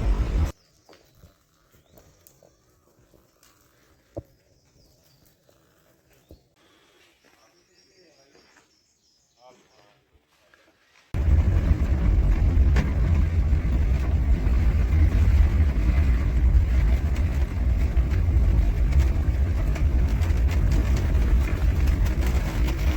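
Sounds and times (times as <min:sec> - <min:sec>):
car engine droning: 0:00.0 - 0:00.5, 0:11.2 - 0:22.9
road noise: 0:00.0 - 0:00.6, 0:11.2 - 0:22.9.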